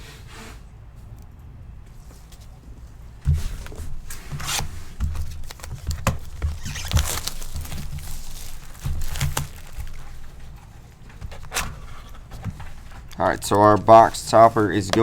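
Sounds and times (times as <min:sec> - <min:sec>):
foil wrapper crinkling: 0:03.6 - 0:15.0.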